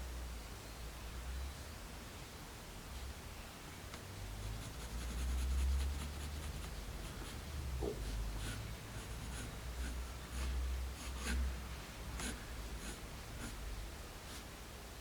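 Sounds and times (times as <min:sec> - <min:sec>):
pencil scratching on paper: 0:04.4 - 0:14.5.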